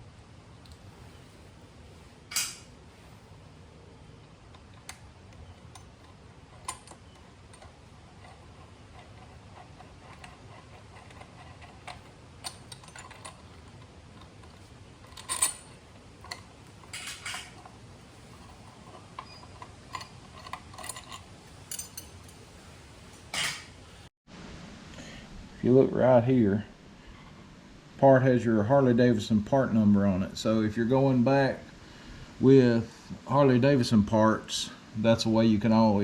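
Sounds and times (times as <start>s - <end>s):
metal tools clinking: 4.6s - 22.5s, 23.3s - 23.7s.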